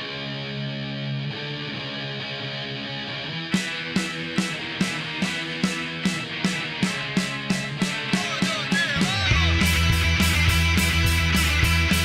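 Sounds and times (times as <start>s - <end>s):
electric guitar: 0.0s - 12.0s
punk rock band playing: 0.0s - 12.0s
fast drums: 3.5s - 12.0s.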